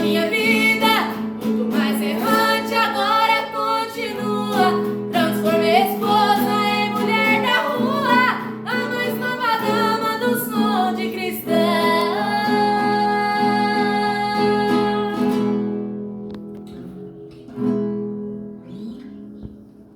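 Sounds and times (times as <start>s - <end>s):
person singing: 0.0s - 15.7s
plucked guitar: 0.0s - 19.9s.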